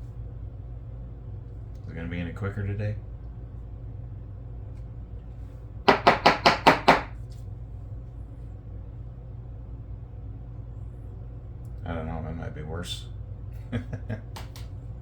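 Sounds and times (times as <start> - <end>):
glue bottle knocking on bench: 5.9 - 7.1.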